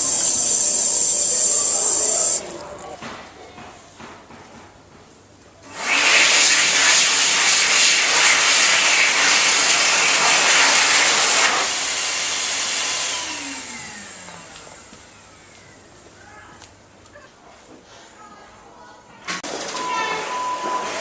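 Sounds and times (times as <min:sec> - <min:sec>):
appliance motor rushing air: 0:00.0 - 0:02.7, 0:05.7 - 0:14.5.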